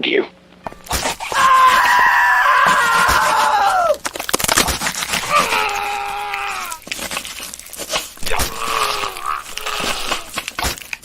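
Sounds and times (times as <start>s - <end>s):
sharp cracks and snaps: 0.5s - 11.0s
person screaming: 1.3s - 4.0s, 5.2s - 6.9s, 8.2s - 10.4s.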